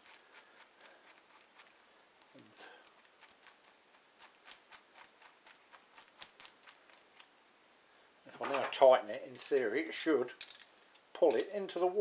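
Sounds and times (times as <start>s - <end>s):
metal bolt and nut clicking: 0.0s - 7.4s, 9.3s - 9.7s, 10.4s - 11.6s.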